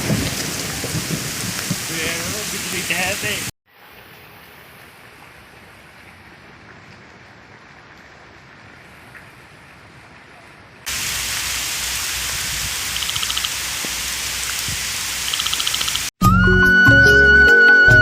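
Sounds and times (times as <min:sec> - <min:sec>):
heavy rain hiss: 0:00.0 - 0:05.5, 0:10.9 - 0:16.1.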